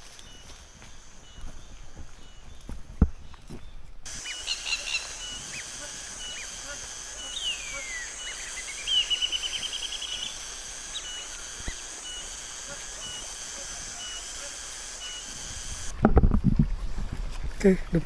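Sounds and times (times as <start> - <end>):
footsteps on trail: 0.0 - 16.0
birds calling: 0.0 - 18.0
steady high hiss: 4.0 - 16.0.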